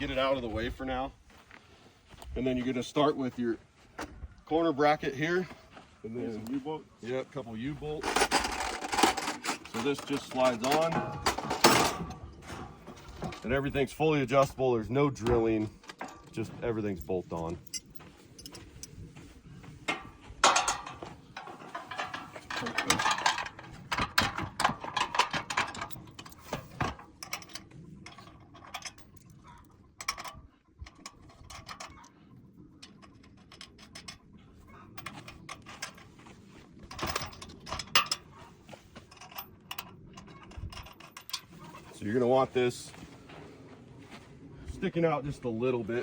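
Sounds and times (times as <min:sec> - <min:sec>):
metal hardware clinking and rattling: 0:07.8 - 0:19.1, 0:19.8 - 0:42.9.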